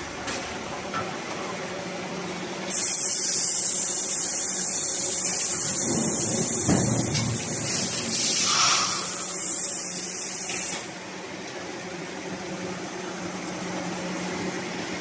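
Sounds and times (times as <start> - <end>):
spraying hiss: 2.7 - 6.8, 7.4 - 10.8.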